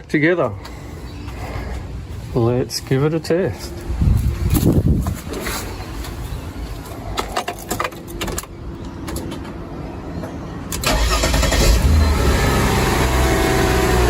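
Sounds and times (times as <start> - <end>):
car engine starting and idling: 10.7 - 14.0.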